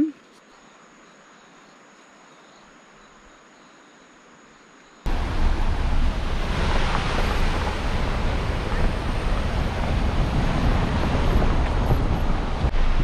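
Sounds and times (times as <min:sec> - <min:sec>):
wind buffeting microphone: 0:05.1 - 0:13.0.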